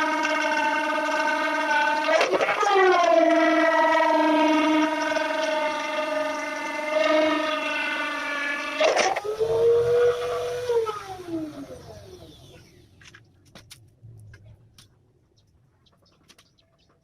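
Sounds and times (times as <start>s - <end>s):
router whining cutting plywood: 0.0s - 12.8s.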